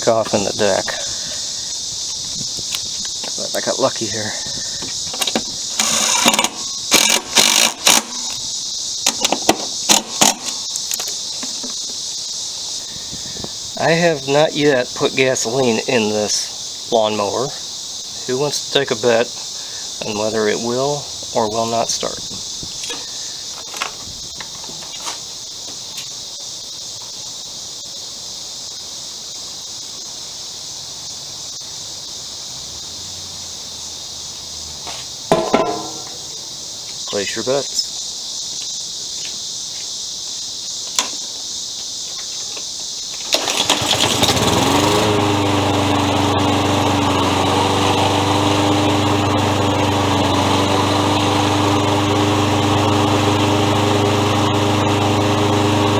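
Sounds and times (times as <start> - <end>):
crickets chirring: 0.0 - 55.9.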